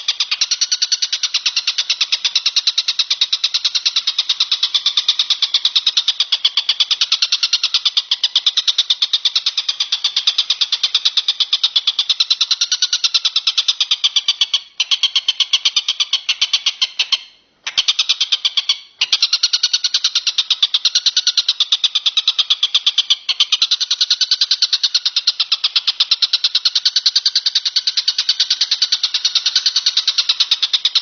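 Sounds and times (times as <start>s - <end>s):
insect rattling call: 0.0s - 17.0s, 17.7s - 31.0s.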